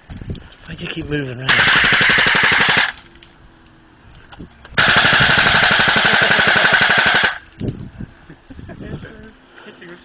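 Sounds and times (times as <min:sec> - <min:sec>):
airsoft rifle full-auto burst: 0:01.5 - 0:03.0, 0:04.8 - 0:07.4.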